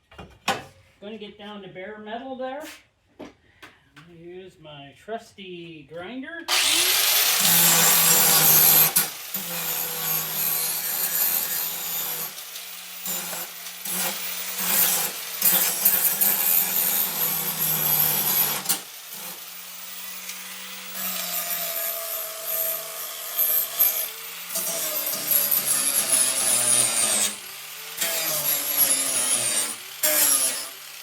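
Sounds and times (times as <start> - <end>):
grinder grinding steel: 6.5 - 31.0.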